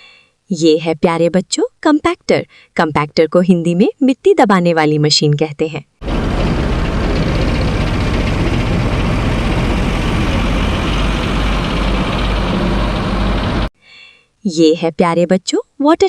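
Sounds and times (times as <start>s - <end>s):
diesel engine rumbling: 6.0s - 13.7s.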